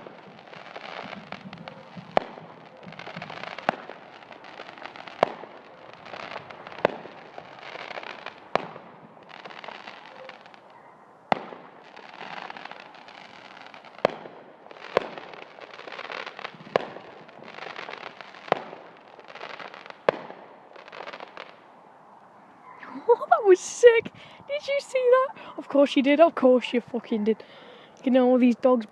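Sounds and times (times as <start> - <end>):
fireworks bangs: 0.0 - 10.7, 11.3 - 21.6.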